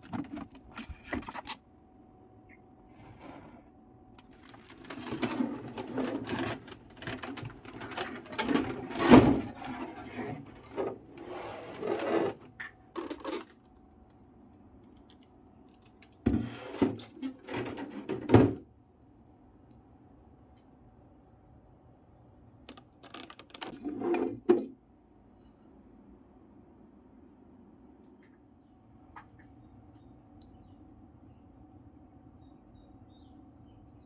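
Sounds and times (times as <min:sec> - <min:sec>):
cardboard and plastic rustling: 0:00.0 - 0:01.6, 0:03.0 - 0:13.6, 0:22.7 - 0:24.7.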